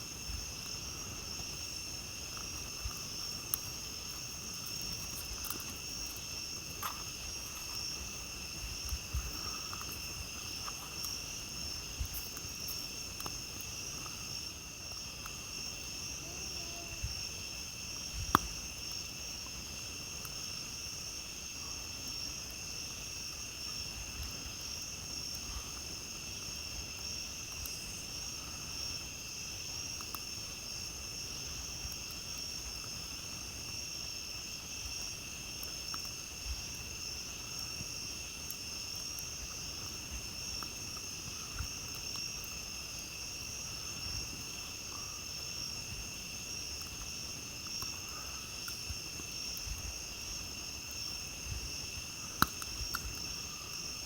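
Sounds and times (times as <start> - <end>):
campfire crackling: 0.0 - 54.0
crickets trilling: 0.0 - 54.0
campfire pop: 46.6 - 54.0.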